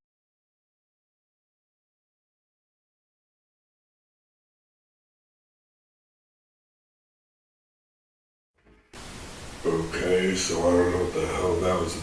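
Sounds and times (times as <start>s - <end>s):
faint low noise: 8.6s - 12.0s.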